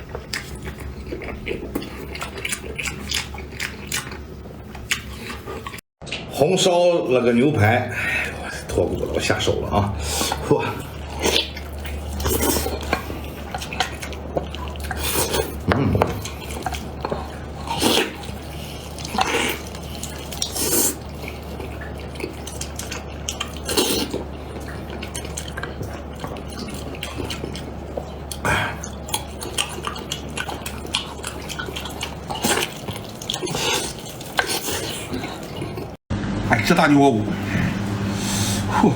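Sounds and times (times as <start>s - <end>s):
chewing and gnawing meat: 0.0s - 6.3s, 8.0s - 36.0s
steady low hum: 35.0s - 38.9s.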